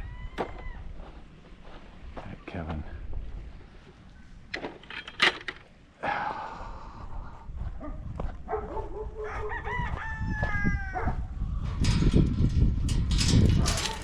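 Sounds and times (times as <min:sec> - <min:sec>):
rooster crowing: 0:00.0 - 0:01.1, 0:09.2 - 0:11.2.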